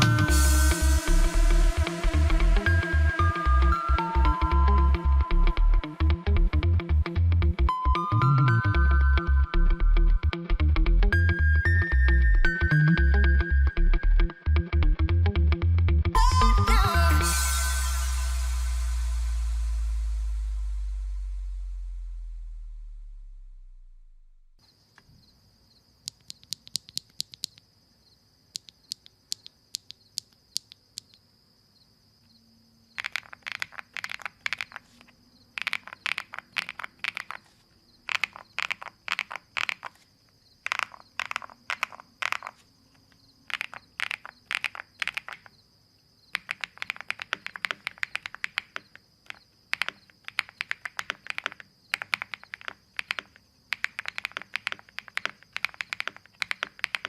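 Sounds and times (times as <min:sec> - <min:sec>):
mechanical keyboard typing: 0:26.1 - 0:27.6, 0:28.5 - 0:31.2, 0:33.0 - 0:37.5, 0:38.1 - 0:40.0, 0:40.6 - 0:42.7, 0:43.5 - 0:45.5, 0:46.3 - 0:57.0.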